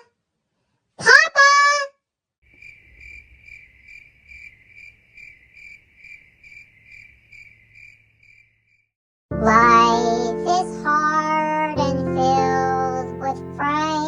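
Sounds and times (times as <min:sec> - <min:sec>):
cricket chirping: 0:02.5 - 0:08.9.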